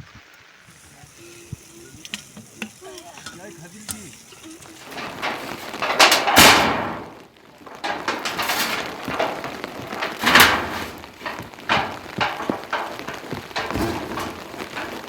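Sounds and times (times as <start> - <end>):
food sizzling in a pan: 0.0 - 6.0
utensils and pots clattering: 0.7 - 15.0.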